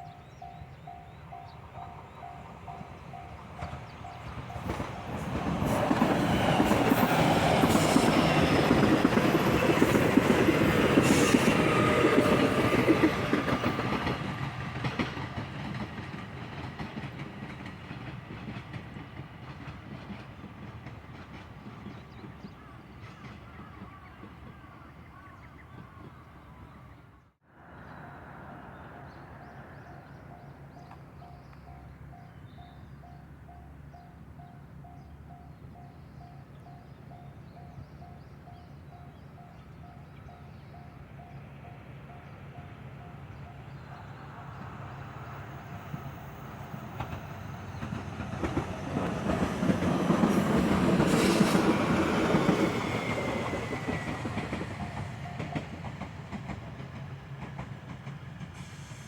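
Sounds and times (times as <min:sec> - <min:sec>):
crossing warning bell ringing: 0:00.0 - 0:04.9, 0:54.2 - 0:56.0
train rail clatter: 0:00.4 - 0:26.2, 0:42.2 - 0:59.0.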